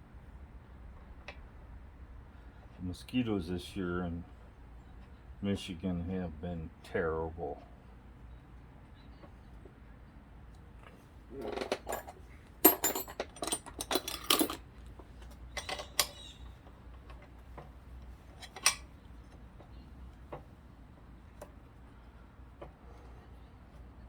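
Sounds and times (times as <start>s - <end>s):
metal tools clinking: 11.4s - 14.7s, 15.5s - 16.3s, 18.3s - 18.9s.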